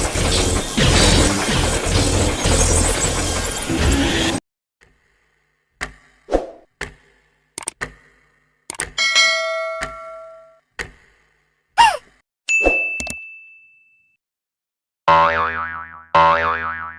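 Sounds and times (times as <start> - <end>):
short clicks and pops: 7.6 - 7.8
bell-like ding: 9.0 - 10.6, 12.5 - 14.2.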